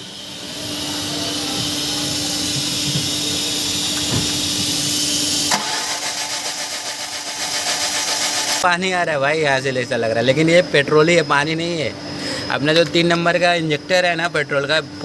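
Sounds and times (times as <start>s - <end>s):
starter motor cranking engine: 0.0s - 8.7s.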